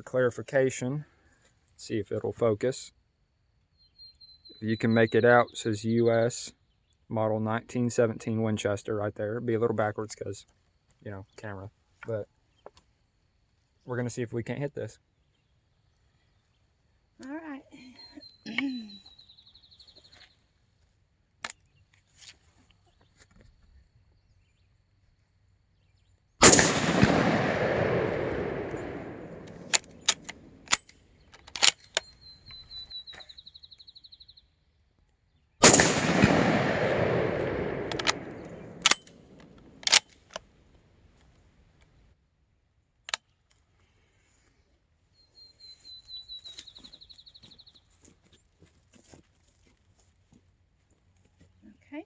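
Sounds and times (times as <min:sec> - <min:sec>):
rifle shots: 0:26.4 - 0:30.8, 0:35.6 - 0:40.0
rolling echo: 0:26.4 - 0:30.8, 0:35.6 - 0:39.9
sharp clicks: 0:26.4 - 0:32.6, 0:35.6 - 0:40.4.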